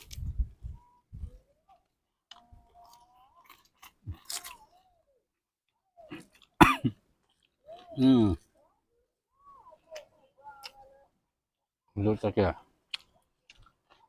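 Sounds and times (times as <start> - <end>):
chewing crisp vegetables: 1.4 - 8.8, 9.8 - 10.9, 12.6 - 14.0.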